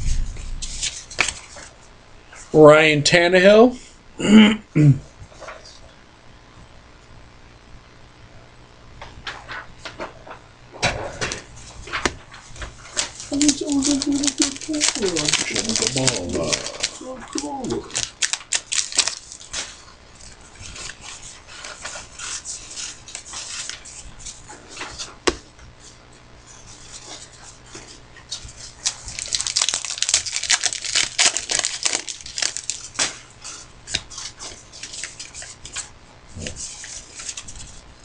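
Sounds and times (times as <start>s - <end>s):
cards rustling and flicking: 0.2s - 1.8s, 11.2s - 25.4s, 26.7s - 37.8s
wrappers crinkling: 11.8s - 24.4s, 28.3s - 35.9s.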